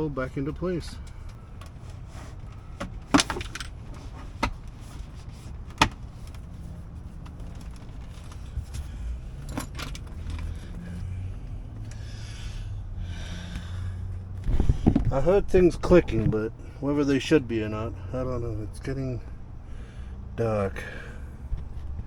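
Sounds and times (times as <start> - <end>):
handling and rustling: 0.5 - 10.8.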